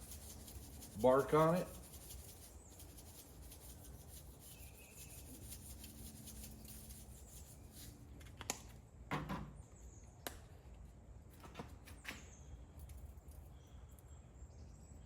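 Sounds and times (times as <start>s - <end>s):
scratchy rubbing: 0.0s - 8.0s.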